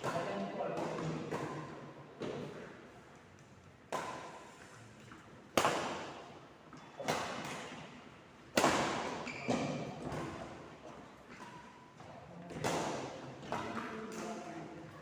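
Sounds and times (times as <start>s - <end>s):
ball hits in indoor court: 0.0s - 15.0s.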